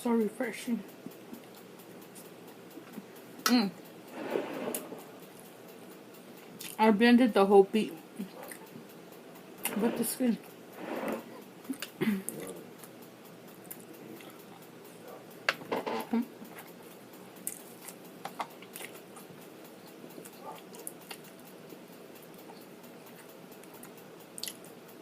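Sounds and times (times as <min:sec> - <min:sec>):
chewing and mouth sounds: 0:06.4 - 0:06.8, 0:08.2 - 0:08.8, 0:11.2 - 0:15.3, 0:16.4 - 0:21.4, 0:22.3 - 0:24.8.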